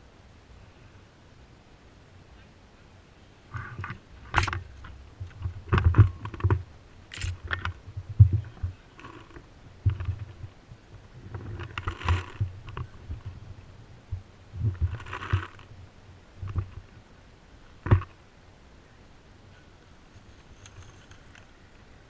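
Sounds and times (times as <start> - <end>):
knocks and rustles of movement: 3.5 - 18.2, 20.0 - 22.0
sharp cracks: 4.2 - 7.8.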